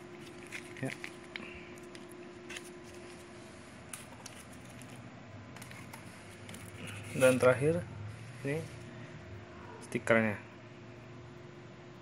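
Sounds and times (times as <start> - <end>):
packaging rustling: 0.0 - 7.6.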